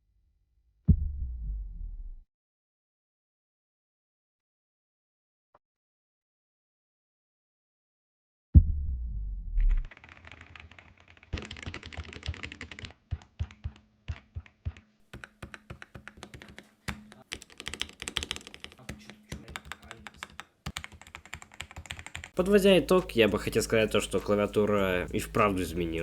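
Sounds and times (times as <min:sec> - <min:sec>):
mechanical keyboard typing: 0:09.9 - 0:22.4.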